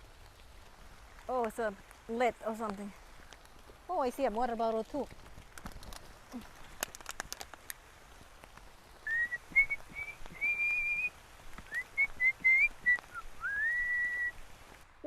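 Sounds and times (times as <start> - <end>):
person whistling a tune: 9.1 - 11.1, 11.7 - 14.3.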